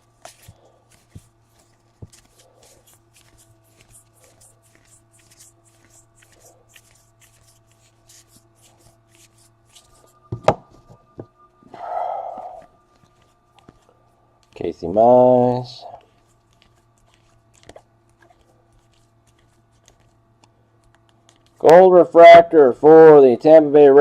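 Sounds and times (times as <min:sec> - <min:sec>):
cards being flipped by hand: 0:00.0 - 0:10.3, 0:12.6 - 0:14.8, 0:16.0 - 0:21.6
faint steady hum: 0:00.0 - 0:24.0.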